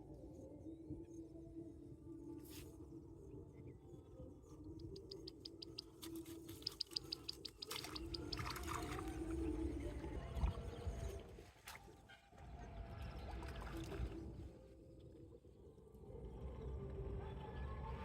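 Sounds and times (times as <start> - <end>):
water splashing: 7.4 - 9.7.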